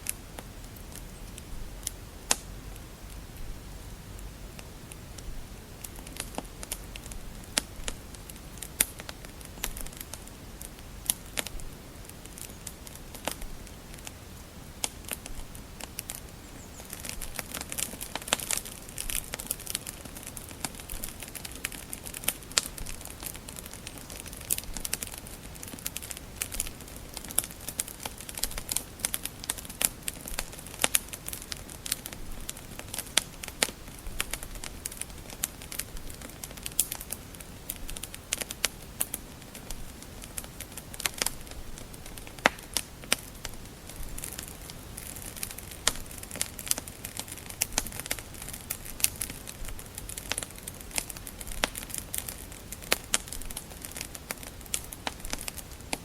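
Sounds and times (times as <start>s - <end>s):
faint steady hiss: 0.0s - 56.0s
wood fire crackling: 0.0s - 56.0s.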